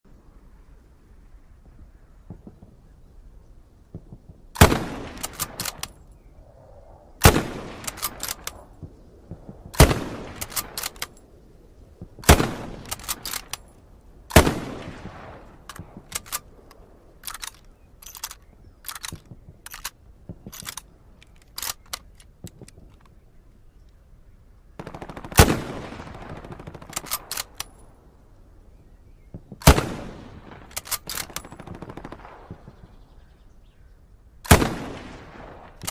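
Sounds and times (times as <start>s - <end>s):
rifle shots: 4.1s - 6.0s, 7.2s - 11.2s, 12.2s - 13.7s, 14.3s - 20.8s, 24.8s - 27.8s, 29.6s - 33.0s, 34.4s - 35.9s
rifle bolt clicks: 4.6s - 6.2s, 7.7s - 8.7s, 9.8s - 11.2s, 12.2s - 14.5s, 15.6s - 23.2s, 26.8s - 27.9s, 30.7s - 31.5s.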